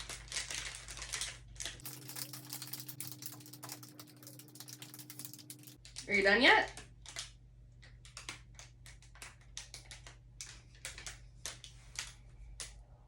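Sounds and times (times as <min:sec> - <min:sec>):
plastic bags crinkling: 0:00.0 - 0:06.0.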